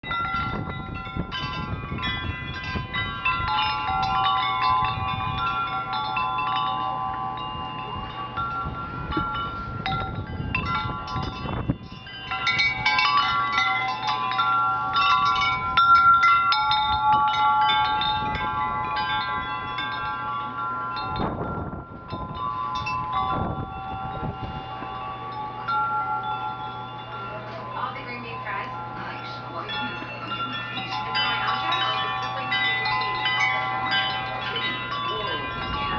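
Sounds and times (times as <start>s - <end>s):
metal wind chimes ringing: 0.0s - 35.9s
wind buffeting microphone: 0.0s - 35.9s
gusty storm wind: 7.6s - 13.0s, 15.3s - 19.9s, 20.9s - 24.8s.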